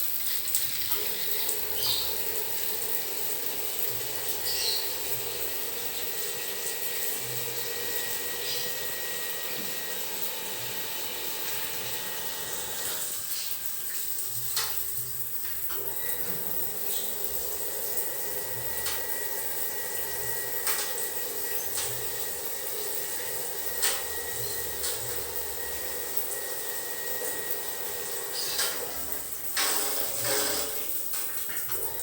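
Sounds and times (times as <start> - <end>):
water running from a tap: 0.0 - 32.0.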